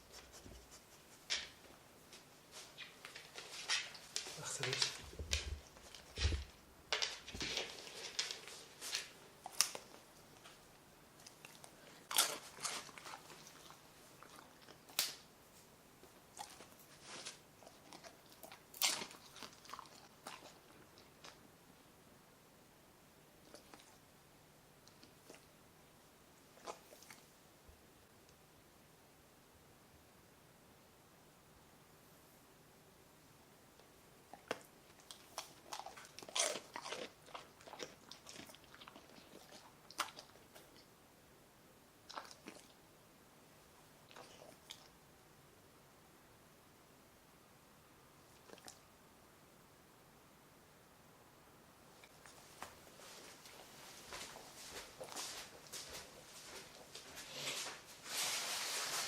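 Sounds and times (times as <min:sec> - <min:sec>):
soft chewing clicks: 0:09.4 - 0:15.2, 0:16.0 - 0:21.4, 0:23.4 - 0:24.1, 0:24.8 - 0:25.6, 0:26.5 - 0:27.3, 0:33.8 - 0:41.0, 0:42.0 - 0:42.8, 0:44.0 - 0:45.0, 0:48.3 - 0:48.9
dog crunching hard treats: 0:11.2 - 0:15.3, 0:16.3 - 0:21.4, 0:34.3 - 0:40.8.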